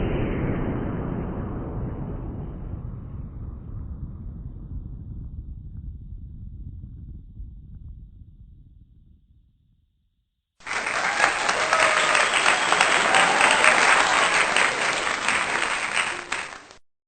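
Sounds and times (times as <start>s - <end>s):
crowd applauding: 10.6s - 16.8s.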